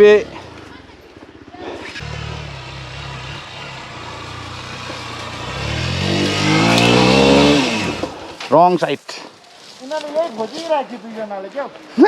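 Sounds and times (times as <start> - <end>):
motorcycle engine revving: 0.0 - 8.4.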